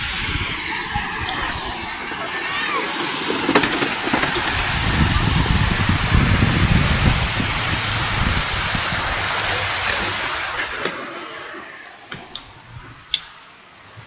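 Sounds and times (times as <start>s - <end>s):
wind buffeting microphone: 0.0s - 2.3s, 2.9s - 10.8s, 12.3s - 13.2s.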